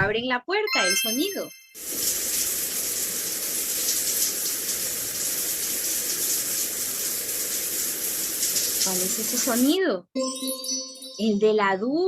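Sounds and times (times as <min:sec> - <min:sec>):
shower running: 0:01.8 - 0:09.8.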